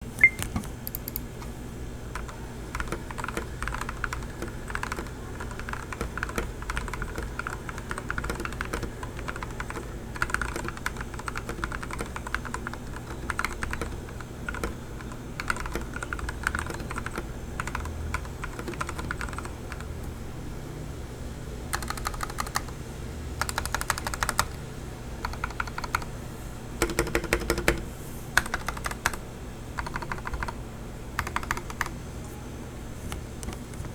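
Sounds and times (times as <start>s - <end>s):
mechanical keyboard typing: 0.2s - 1.4s, 2.1s - 19.9s, 21.7s - 22.8s, 23.4s - 24.6s, 25.2s - 26.1s, 26.8s - 29.2s, 29.8s - 30.6s, 31.2s - 32.0s.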